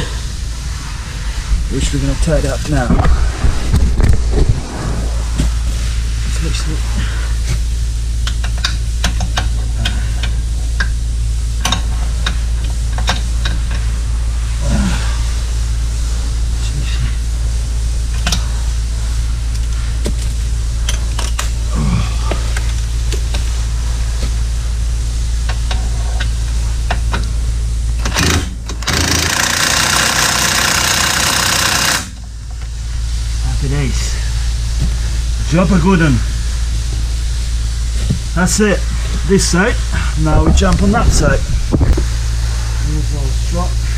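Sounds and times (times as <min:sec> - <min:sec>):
steady low rumble: 0:00.0 - 0:28.0, 0:32.2 - 0:43.9
steady low hum: 0:00.0 - 0:43.9
impact wrench hammering: 0:28.0 - 0:32.2.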